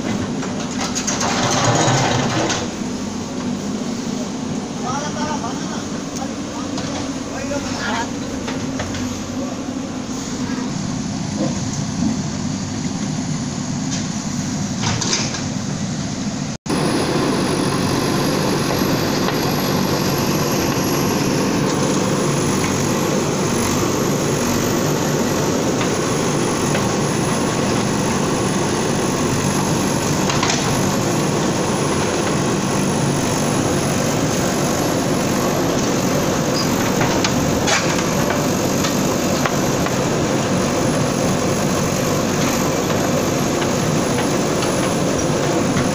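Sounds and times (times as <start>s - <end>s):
noisy clatter: 0.0s - 3.6s, 14.8s - 15.6s, 16.7s - 45.9s
bulldozer engine rumble: 0.0s - 45.9s.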